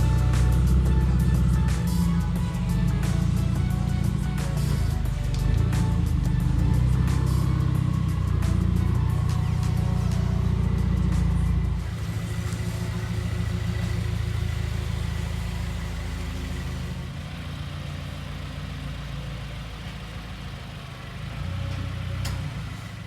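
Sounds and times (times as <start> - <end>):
car engine running at low speed: 0.0 - 23.0.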